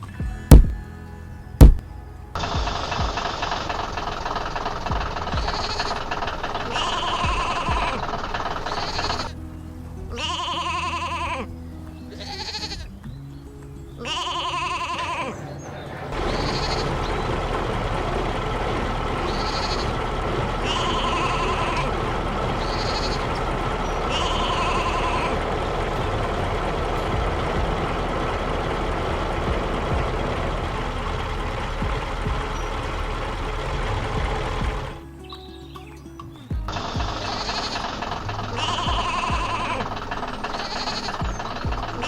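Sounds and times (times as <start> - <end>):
engine rumble: 0.0 - 42.0
animal bleating: 5.4 - 9.4, 10.1 - 13.0, 14.0 - 15.6, 16.2 - 17.1, 19.2 - 26.7, 36.8 - 42.0.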